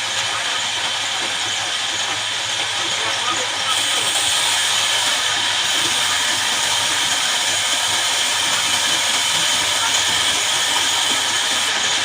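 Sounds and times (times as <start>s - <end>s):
band saw cutting log: 3.7s - 12.0s.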